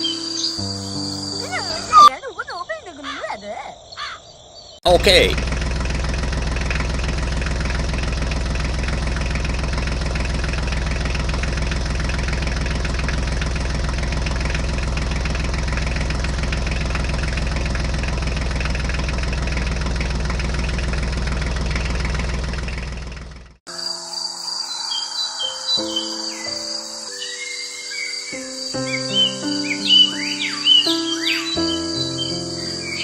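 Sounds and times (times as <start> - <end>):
tractor engine idling: 4.9 - 23.6.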